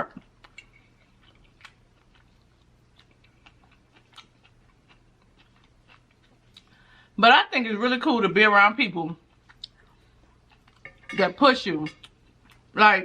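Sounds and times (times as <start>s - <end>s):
faint chewing: 0.0s - 7.0s, 9.1s - 11.1s.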